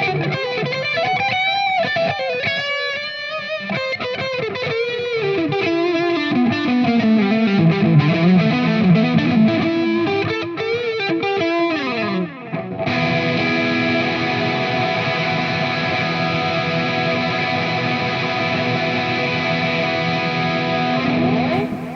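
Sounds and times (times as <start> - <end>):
distorted electric guitar shredding: 21.5 - 21.9.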